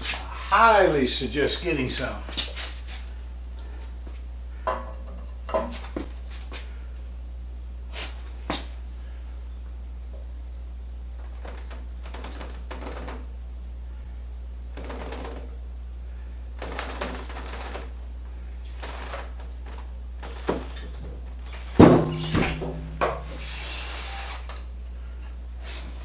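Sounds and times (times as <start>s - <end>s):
steady low hum: 0.0s - 26.0s
metal clank: 21.8s - 23.4s.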